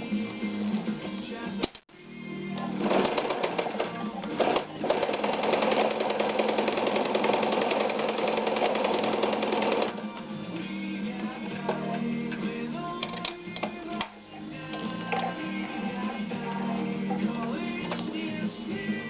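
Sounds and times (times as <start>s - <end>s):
background music: 0.0s - 19.0s
sewing machine clatter: 2.8s - 10.0s.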